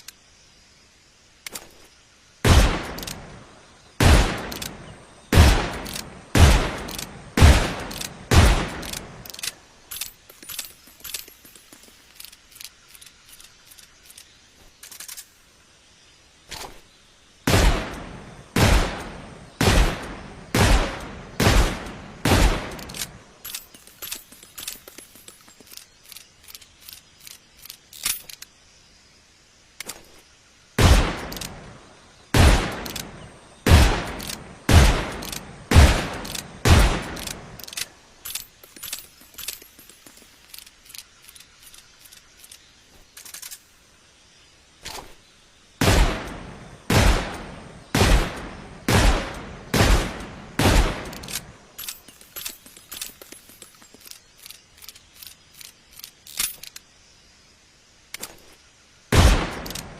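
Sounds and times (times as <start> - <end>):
light metallic clicks: 4.4 - 4.9, 6.8 - 15.4, 22.7 - 28.7, 31.2 - 31.6, 32.7 - 33.2, 34.0 - 35.5, 36.1 - 43.8, 51.0 - 57.0, 59.4 - 59.9.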